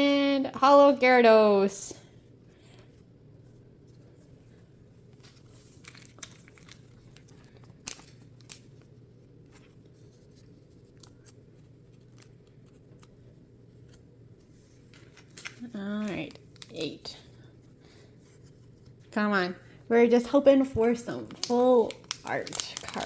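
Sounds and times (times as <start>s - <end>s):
low steady hum: 0.0s - 23.0s
cards and foil pack rustling: 5.0s - 19.2s, 20.2s - 23.0s.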